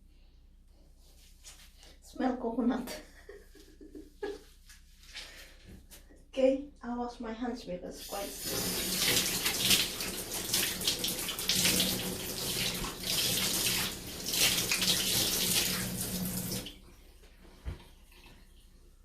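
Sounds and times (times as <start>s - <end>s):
tap water running into sink: 8.1s - 16.8s.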